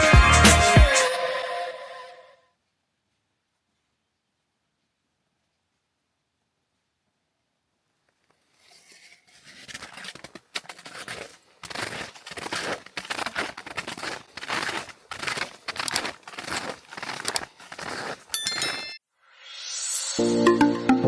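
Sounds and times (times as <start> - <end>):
footsteps crunching in snow: 8.5 - 19.0.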